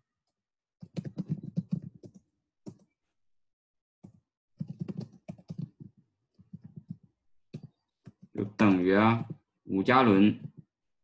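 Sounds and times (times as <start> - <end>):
pen tapping and dragging on paper: 4.0 - 9.5.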